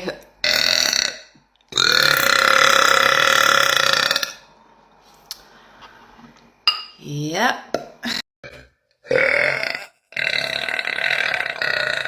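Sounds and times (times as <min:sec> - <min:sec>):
woman burping: 0:00.5 - 0:04.4, 0:08.0 - 0:12.0.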